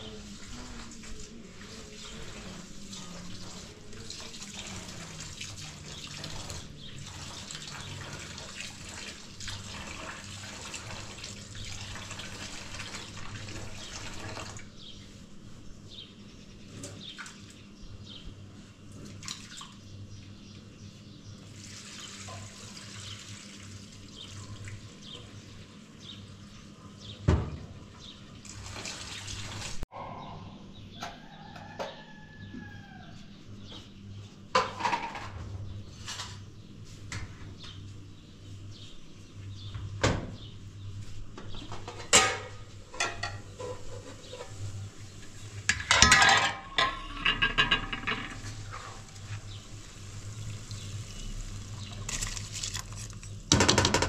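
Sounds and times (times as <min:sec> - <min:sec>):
water splashing and pouring: 0:00.8 - 0:14.7, 0:21.5 - 0:24.8, 0:28.4 - 0:29.8, 0:48.6 - 0:53.4
knocks and clinks: 0:45.7 - 0:48.5.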